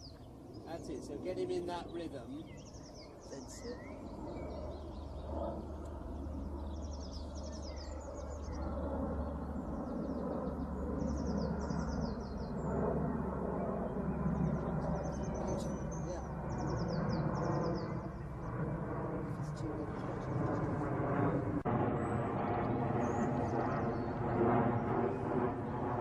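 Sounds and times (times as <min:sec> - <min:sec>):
songbird trilling: 0:00.0 - 0:12.7, 0:14.2 - 0:18.4.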